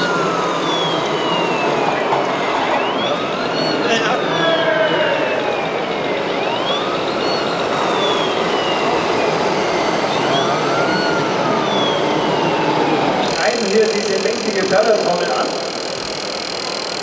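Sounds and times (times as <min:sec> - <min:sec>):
wailing siren: 0:00.0 - 0:17.0
noisy background: 0:05.9 - 0:17.0.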